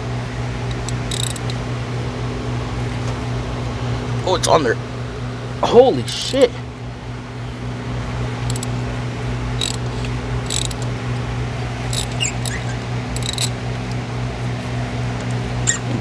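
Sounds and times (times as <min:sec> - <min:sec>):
steady low hum: 0:00.0 - 0:16.0
ratchet clicks: 0:00.7 - 0:01.6, 0:06.1 - 0:06.5, 0:08.4 - 0:08.8, 0:09.6 - 0:10.9, 0:11.9 - 0:13.6
spark plug squeaking: 0:00.9 - 0:01.6, 0:09.6 - 0:10.9, 0:11.9 - 0:13.6.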